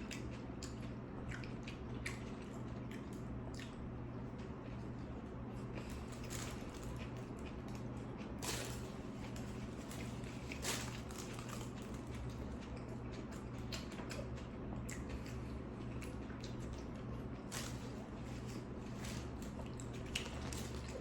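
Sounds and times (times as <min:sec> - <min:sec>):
chewing clicks: 0:00.0 - 0:03.8, 0:10.5 - 0:17.1
steady low hum: 0:00.0 - 0:21.0.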